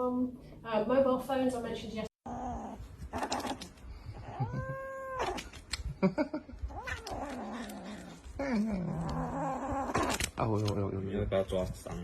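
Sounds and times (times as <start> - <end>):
cat yowling: 4.2 - 5.5.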